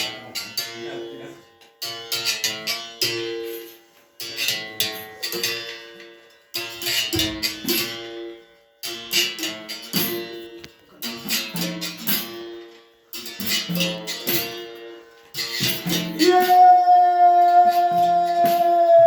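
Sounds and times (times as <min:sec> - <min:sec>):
berimbau playing: 0:13.6 - 0:19.0.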